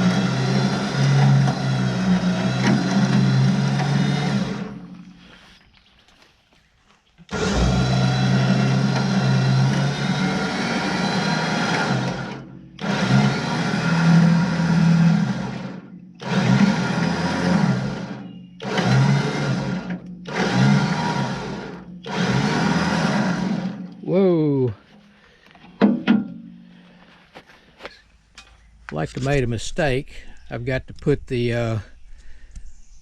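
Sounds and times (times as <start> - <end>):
electric winch motor hauling cable: 0.0 - 5.5, 7.2 - 24.2.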